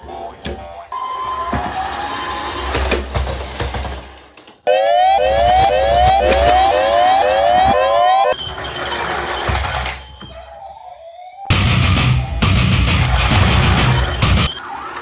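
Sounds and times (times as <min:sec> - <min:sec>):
toy siren whooping: 0:04.7 - 0:11.5
loud music: 0:11.5 - 0:14.6.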